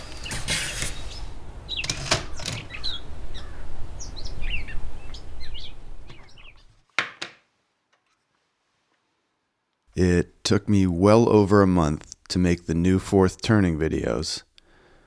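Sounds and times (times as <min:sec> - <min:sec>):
birds chirping: 0:00.0 - 0:06.8.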